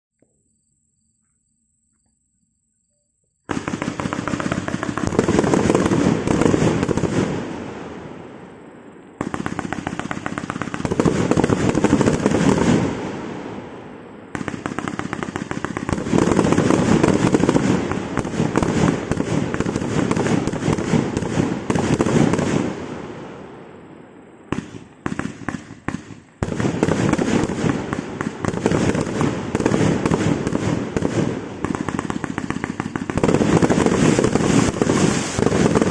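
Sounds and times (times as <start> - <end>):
firework cake firing shots: 3.5 - 7.5, 9.2 - 13.2, 14.4 - 22.8, 24.5 - 35.9.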